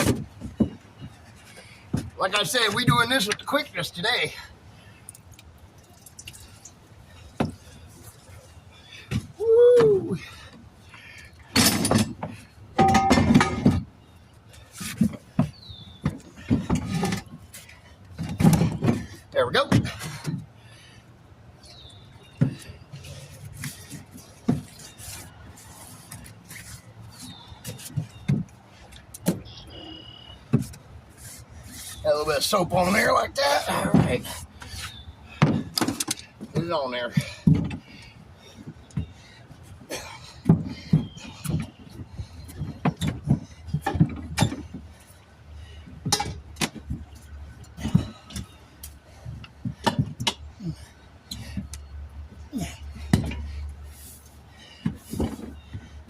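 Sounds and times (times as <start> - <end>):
tire rim and tools clanking: 0.0 - 56.0
short falling squeaks: 29.2 - 30.7.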